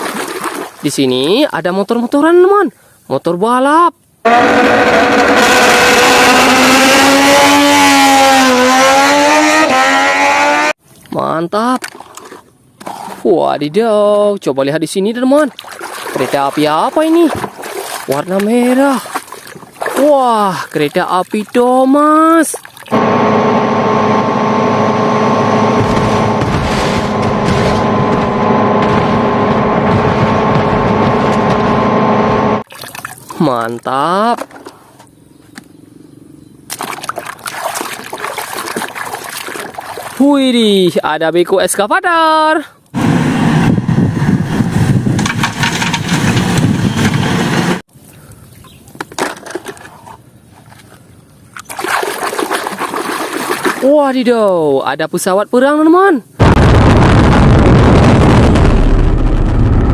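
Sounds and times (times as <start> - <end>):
racing engine: 4.3 - 10.8, 22.9 - 32.6
machine drone: 22.9 - 32.6, 43.0 - 47.8, 56.4 - 59.9.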